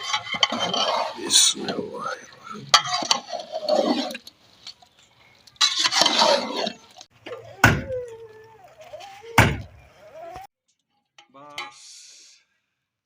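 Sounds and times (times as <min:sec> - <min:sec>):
stirring or sizzling rush: 0:00.0 - 0:07.1.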